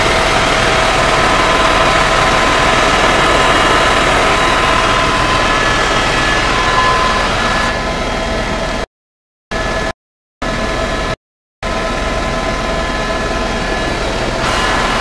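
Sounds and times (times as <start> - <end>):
rushing noise: 0.0 - 8.8
loud mechanical hum: 0.0 - 8.9, 9.5 - 15.0.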